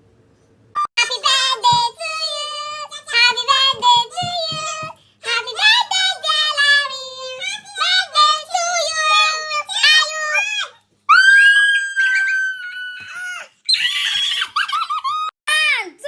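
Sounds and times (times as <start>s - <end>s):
child singing: 0.9s - 10.7s.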